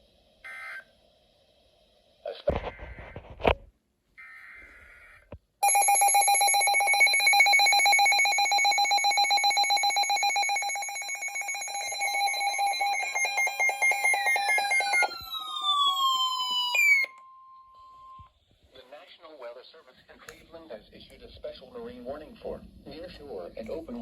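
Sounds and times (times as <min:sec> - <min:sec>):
warbling two-tone alarm: 0:05.6 - 0:18.2
falling tone: 0:13.0 - 0:17.2.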